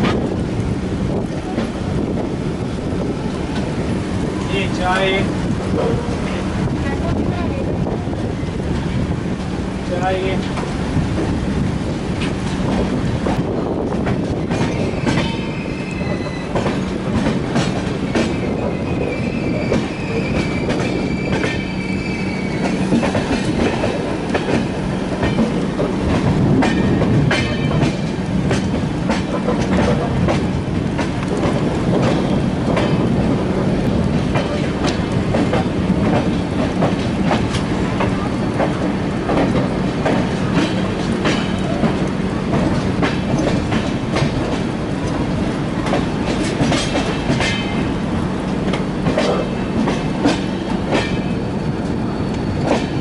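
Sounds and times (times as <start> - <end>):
train rumble on rails: 0.0 - 53.0
high wheel squeal: 14.7 - 16.8, 18.0 - 22.8
wheels clicking over rail joints: 22.5 - 53.0.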